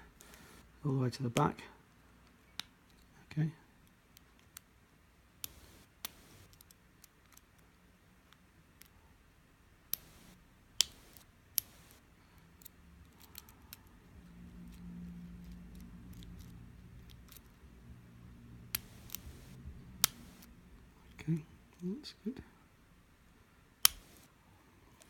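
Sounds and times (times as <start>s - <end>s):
lock pick scraping and clicking: 15.4s - 17.6s.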